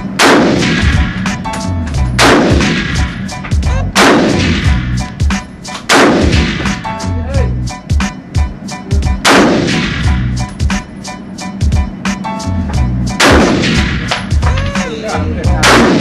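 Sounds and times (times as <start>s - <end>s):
rifle shots with echo: 0.1s - 1.4s, 2.2s - 3.2s, 4.0s - 4.8s, 5.9s - 6.8s, 9.2s - 10.1s, 13.2s - 14.4s, 15.6s - 16.0s.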